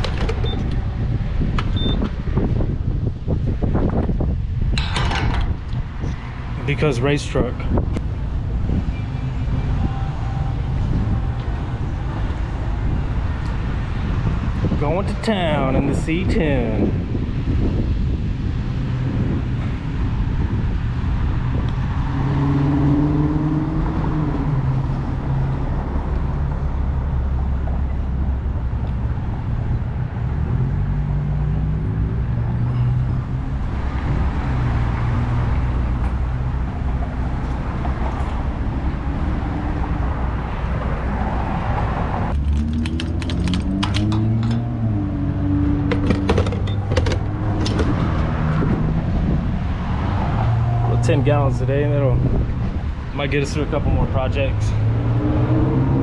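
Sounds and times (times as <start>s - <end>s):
road noise: 0.0s - 56.0s
sharp clicks: 42.3s - 44.7s.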